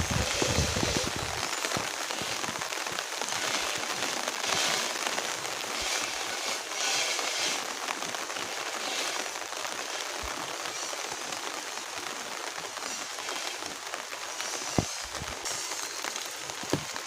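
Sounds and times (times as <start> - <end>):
heavy rain hissing: 0.0 - 17.0
raindrops ticking: 0.0 - 17.0.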